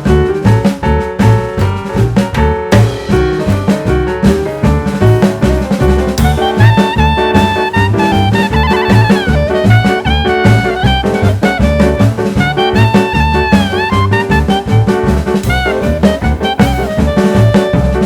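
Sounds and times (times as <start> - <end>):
drum beat: 0.0 - 18.0
brass melody: 4.2 - 18.0.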